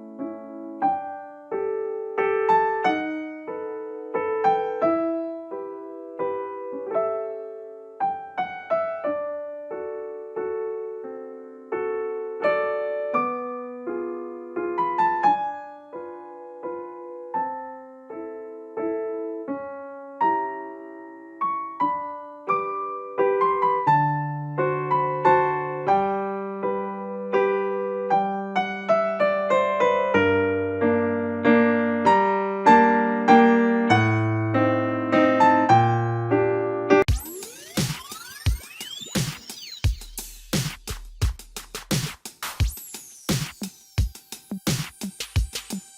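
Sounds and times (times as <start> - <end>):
gentle piano music: 0.0 - 37.6.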